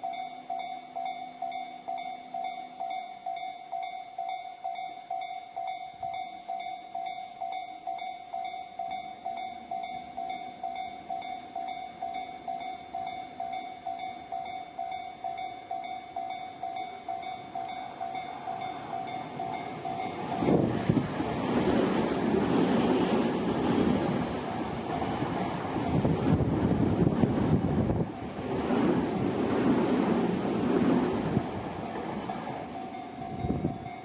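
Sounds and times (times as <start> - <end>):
level crossing bell ringing: 0.0 - 20.5, 32.7 - 34.0
train rumbling past: 0.0 - 34.0.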